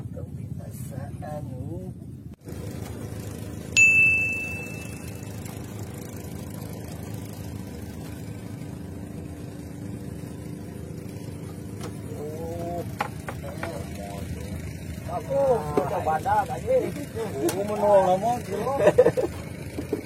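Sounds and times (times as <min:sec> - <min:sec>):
low engine hum: 0:00.0 - 0:20.0
bright bell ding: 0:03.8 - 0:05.3.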